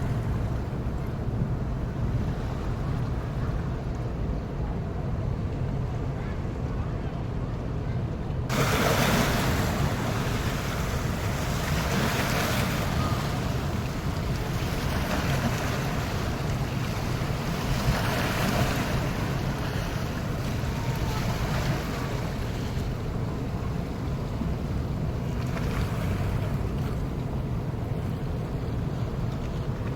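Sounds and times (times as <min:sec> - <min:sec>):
ocean surf washing on shore: 0:08.5 - 0:29.9.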